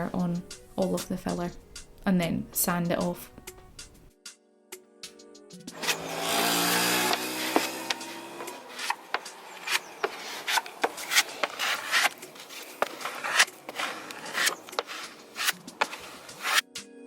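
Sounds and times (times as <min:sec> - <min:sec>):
scraping and rubbing on boat hull: 0:05.8 - 0:06.0, 0:06.8 - 0:16.6.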